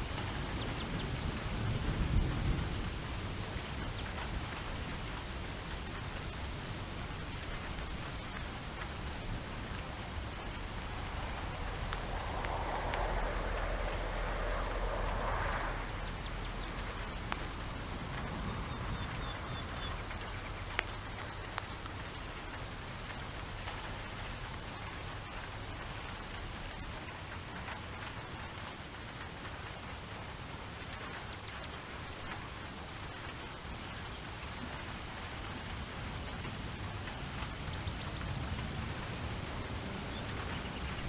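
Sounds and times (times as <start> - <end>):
rain drop ticks: 0.0 - 41.0
steady rain hiss: 0.0 - 41.0
low rumble: 8.8 - 20.8.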